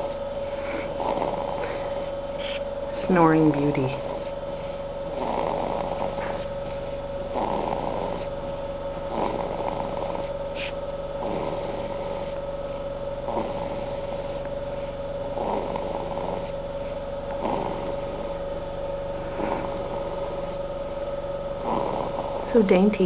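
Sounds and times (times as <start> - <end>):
person snoring: 0.0 - 2.7, 3.8 - 6.5, 7.3 - 8.3, 9.1 - 12.4, 13.2 - 16.6, 17.3 - 18.5, 19.2 - 20.6, 21.6 - 22.6
steady background hum: 0.0 - 23.0.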